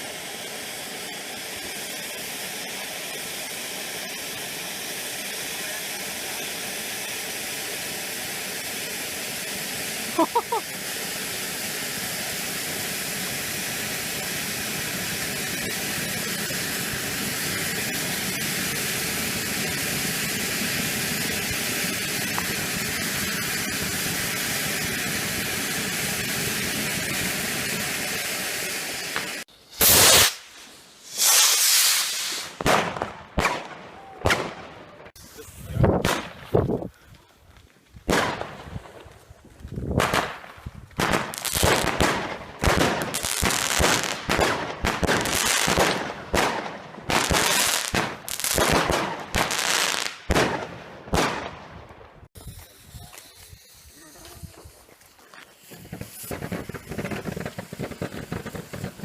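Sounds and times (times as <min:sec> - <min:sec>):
steady hiss: 0:00.0 - 0:32.6, 0:52.4 - 0:59.0
firework bangs: 0:00.0 - 0:36.8, 0:38.0 - 0:59.0.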